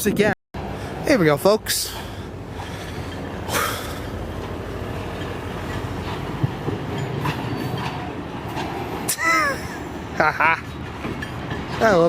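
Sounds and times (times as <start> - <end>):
freight train rumbling: 0.1 - 12.0
train wheels clacking: 1.8 - 9.2, 10.6 - 12.0.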